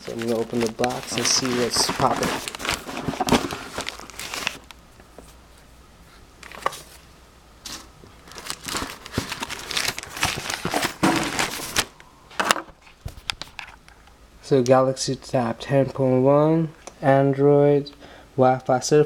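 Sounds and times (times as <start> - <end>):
cardboard and plastic crinkling: 0.0 - 5.3, 6.4 - 7.0, 7.6 - 13.8.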